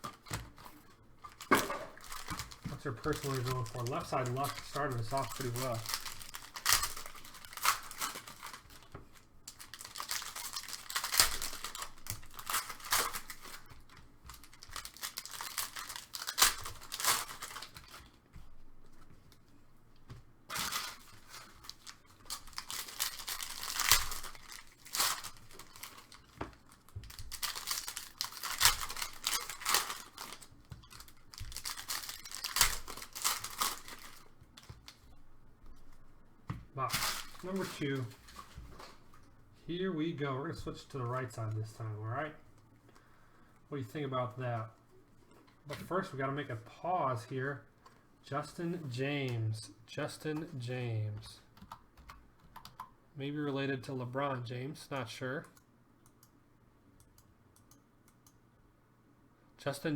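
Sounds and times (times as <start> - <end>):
plastic wrapping crinkling and tearing: 0.0 - 19.4, 20.0 - 35.2, 36.8 - 39.4.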